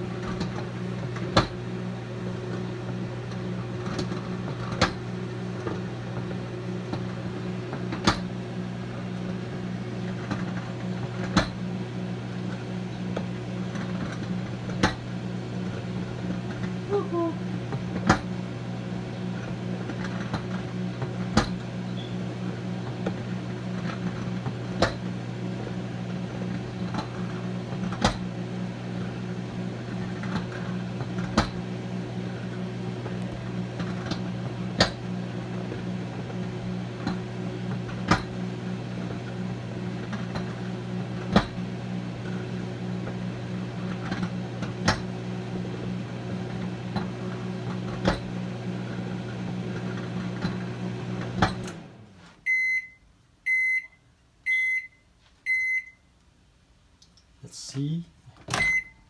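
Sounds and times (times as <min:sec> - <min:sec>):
microwave oven humming: 0:00.0 - 0:56.2, 0:58.4 - 0:59.0.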